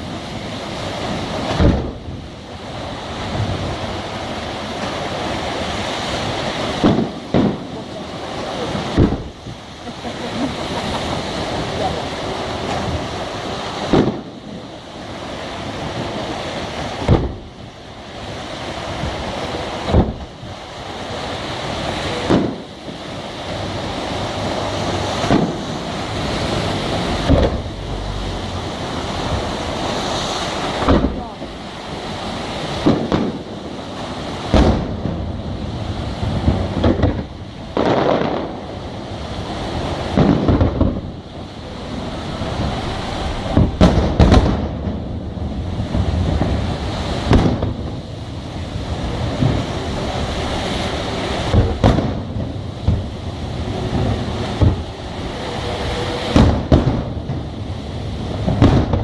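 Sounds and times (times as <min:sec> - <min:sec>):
steady rushing noise: 0:00.0 - 0:59.0
firework shells bursting: 0:08.7 - 0:11.2, 0:13.8 - 0:14.3, 0:24.4 - 0:27.7, 0:32.7 - 0:35.3, 0:36.4 - 0:38.6, 0:43.3 - 0:45.0, 0:47.2 - 0:48.0.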